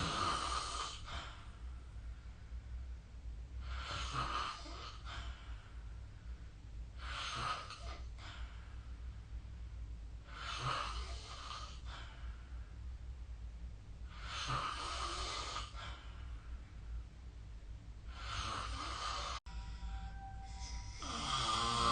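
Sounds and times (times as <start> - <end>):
person snoring: 0.0 - 1.2, 14.1 - 15.8, 18.1 - 19.4, 20.5 - 21.9
low steady hum: 0.0 - 21.9.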